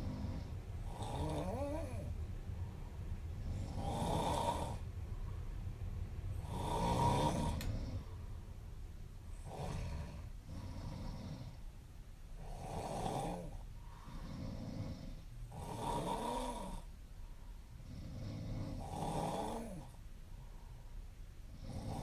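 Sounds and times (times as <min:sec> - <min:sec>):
woman snoring: 0:00.0 - 0:02.1, 0:03.4 - 0:04.8, 0:06.4 - 0:08.0, 0:09.4 - 0:11.6, 0:12.4 - 0:16.9, 0:17.8 - 0:20.0, 0:21.5 - 0:22.0.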